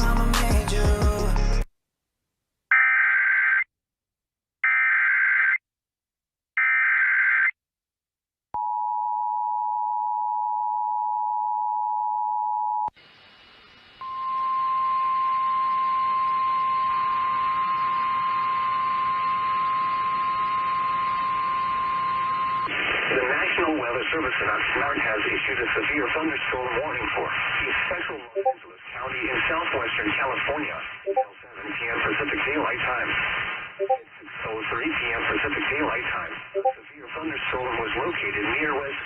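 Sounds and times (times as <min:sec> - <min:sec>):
radio hiss: 0:22.7 - 0:39.0
two-tone attention signal: 0:31.1 - 0:31.3, 0:33.8 - 0:34.0, 0:36.6 - 0:36.8.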